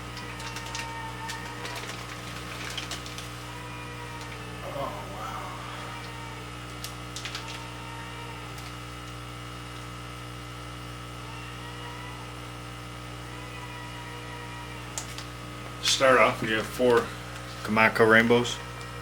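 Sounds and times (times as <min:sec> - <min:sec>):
electrical mains hum: 0:00.0 - 0:19.0.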